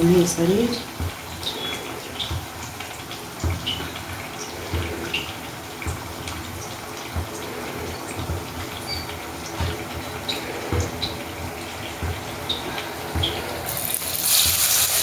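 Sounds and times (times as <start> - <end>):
food deep-frying in oil: 0.0 - 15.0
oil popping: 12.0 - 15.0.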